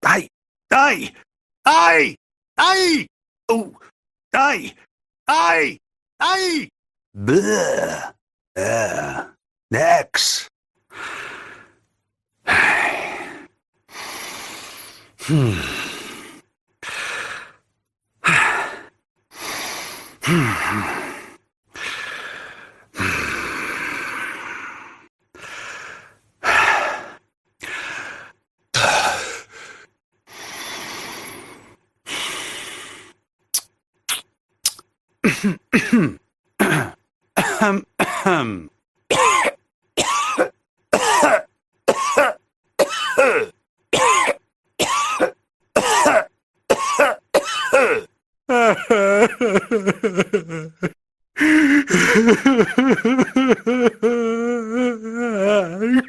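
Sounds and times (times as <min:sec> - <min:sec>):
breathy cough-like vocal sounds: 0:35.2 - 0:51.0.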